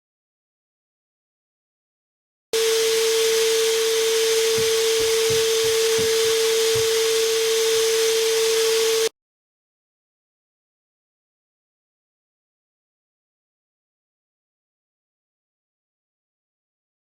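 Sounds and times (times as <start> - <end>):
airflow hiss: 2.6 - 9.1
vacuum motor whine: 2.6 - 9.1.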